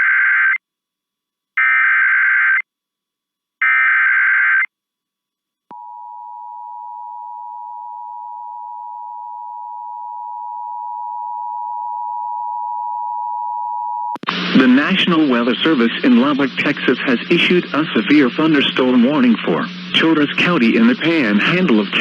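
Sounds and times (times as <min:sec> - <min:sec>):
steady attention tone: 0:05.7 - 0:22.0.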